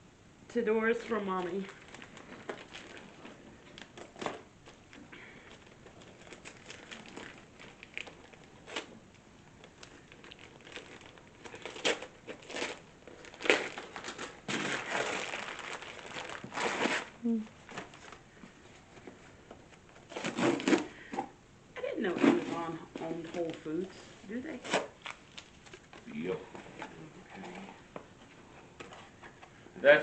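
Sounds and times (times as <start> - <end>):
wrapping paper crinkling and tearing: 1.1 - 18.3, 24.6 - 26.3.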